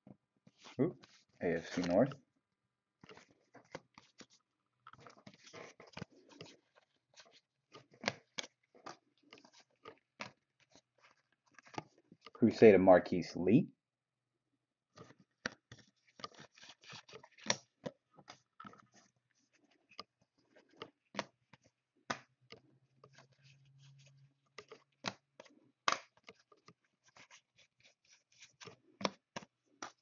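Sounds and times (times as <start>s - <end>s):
cards clicking and sliding: 0.5s - 2.1s, 5.0s - 12.0s, 15.0s - 30.0s.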